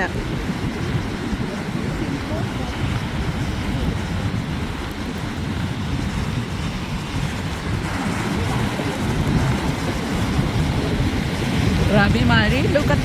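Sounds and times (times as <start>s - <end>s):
rough sea surf: 0.0s - 13.0s
wind buffeting microphone: 0.0s - 13.0s.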